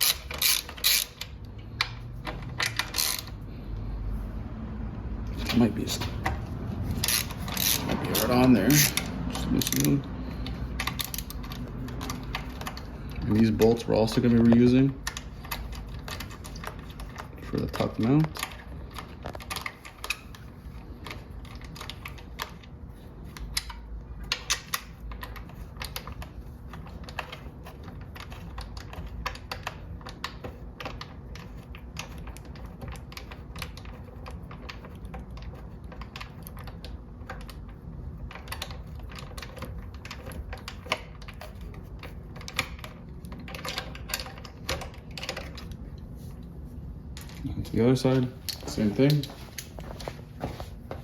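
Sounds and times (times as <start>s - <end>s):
ratchet wrench clicking: 0.0s - 3.4s, 6.9s - 17.2s.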